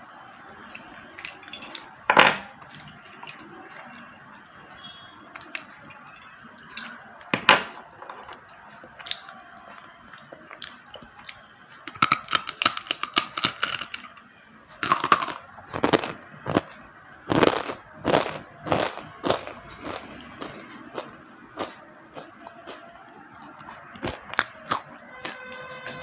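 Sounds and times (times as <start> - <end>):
chewing crunches: 8.3 - 14.2, 14.8 - 26.0.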